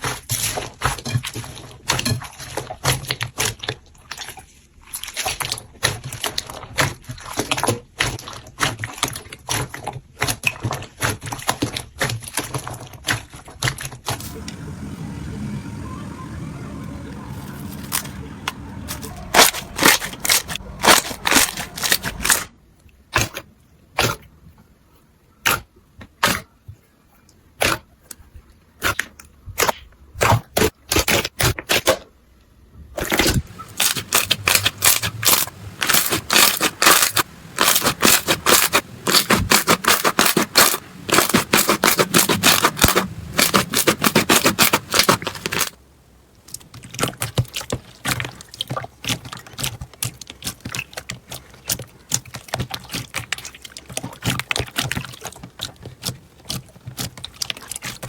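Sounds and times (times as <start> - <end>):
slime crackling and popping: 33.1 - 45.8.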